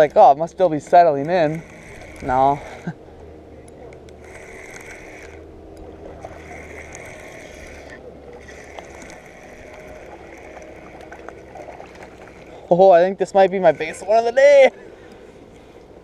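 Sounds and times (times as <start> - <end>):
soft whirring: 0.0 - 16.0
river water rushing: 4.3 - 15.6.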